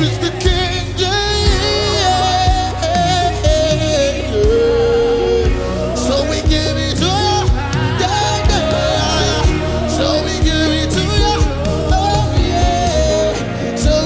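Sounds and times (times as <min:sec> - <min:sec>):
gospel band with steady beat: 0:00.0 - 0:14.0
person singing long sliding notes: 0:00.0 - 0:14.0.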